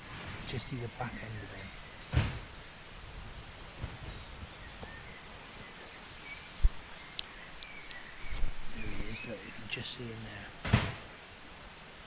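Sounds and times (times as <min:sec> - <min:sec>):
bird chirps: 0:00.1 - 0:10.6
low thump: 0:02.1 - 0:02.5, 0:10.6 - 0:11.1
sharp clicks: 0:07.1 - 0:09.2.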